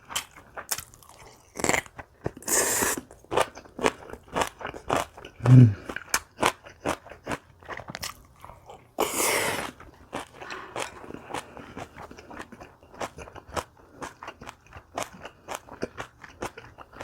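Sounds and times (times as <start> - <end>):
crunching and chewing food: 0.0 - 17.0.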